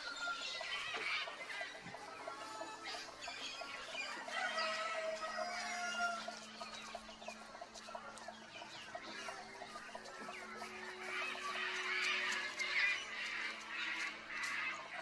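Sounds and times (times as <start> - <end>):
chickens clucking: 0.0 - 15.0
wild birds calling: 0.0 - 15.0.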